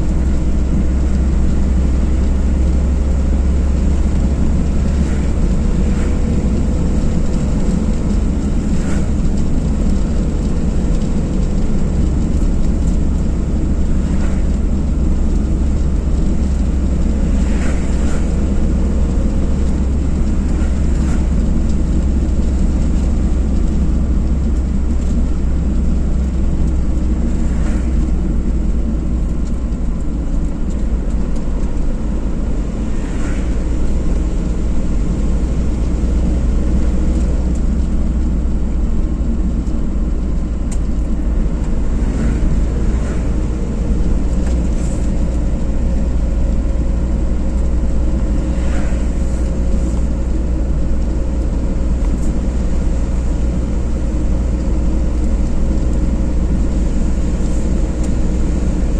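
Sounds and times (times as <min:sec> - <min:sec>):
car engine and tyre rumble: 0:00.0 - 0:58.9.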